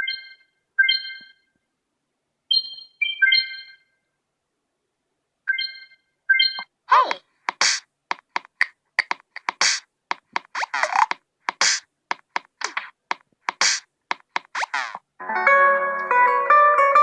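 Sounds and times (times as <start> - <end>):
percussive ringtone clicks and swishes: 5.5 - 15.0
plucked guitar-like ringtone: 15.2 - 17.0.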